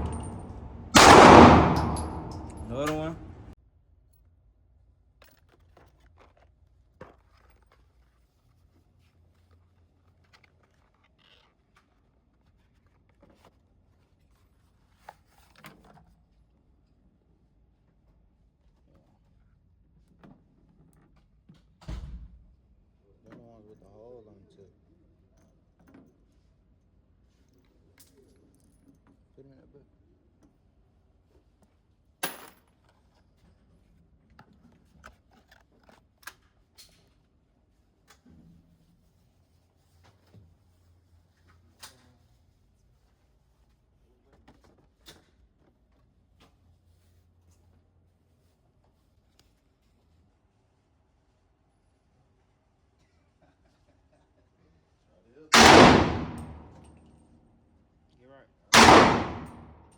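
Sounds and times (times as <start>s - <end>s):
handling clicks and rustles: 0.0s - 3.5s.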